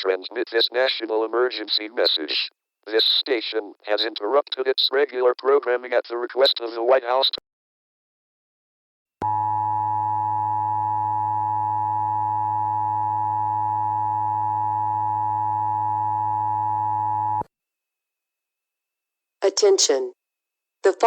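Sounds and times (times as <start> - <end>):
low hum: 9.2 - 17.4
two-tone electronic alarm: 9.2 - 17.4.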